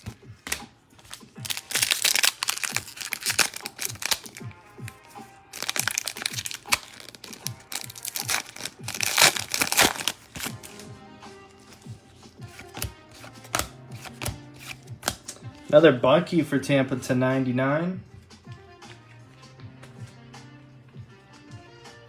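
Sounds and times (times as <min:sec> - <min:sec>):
foil wrapper tearing and crinkling: 0:00.0 - 0:10.8, 0:12.6 - 0:15.2
background music with steady beat: 0:00.0 - 0:22.0.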